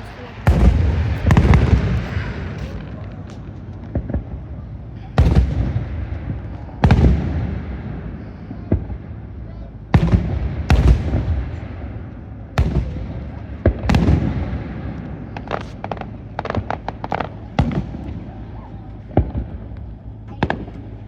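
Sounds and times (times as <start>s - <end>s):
fireworks crackling pops: 0.0s - 4.5s, 12.6s - 21.0s
fireworks booming: 0.0s - 21.0s.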